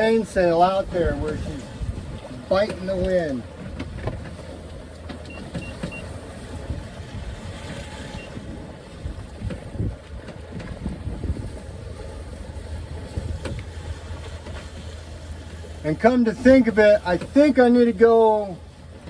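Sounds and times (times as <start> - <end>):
wind rushing over microphone: 0.0 - 4.4, 5.9 - 14.8
water noise: 0.0 - 19.0.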